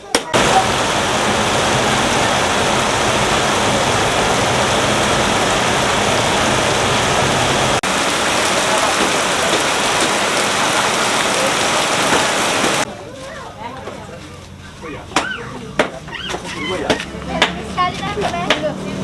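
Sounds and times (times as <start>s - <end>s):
heavy rain pouring: 0.4s - 12.9s.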